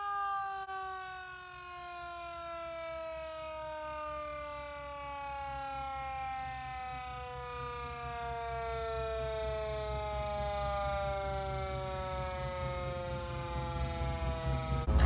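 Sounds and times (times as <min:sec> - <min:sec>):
siren winding down: 0:00.0 - 0:15.0
low steady rumble: 0:10.7 - 0:15.0.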